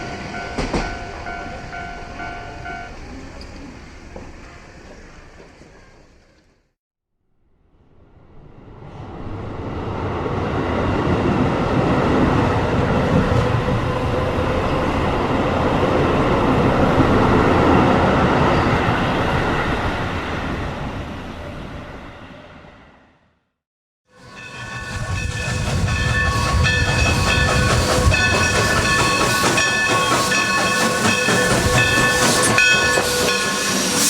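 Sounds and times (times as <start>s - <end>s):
train rumbling and rattling: 0.0s - 6.6s, 8.3s - 22.8s, 24.2s - 34.0s.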